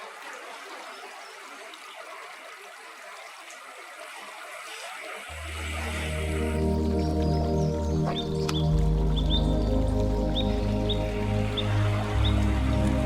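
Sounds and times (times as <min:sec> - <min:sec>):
water trickling and splashing: 0:00.0 - 0:13.0
background music with low notes: 0:05.3 - 0:13.0.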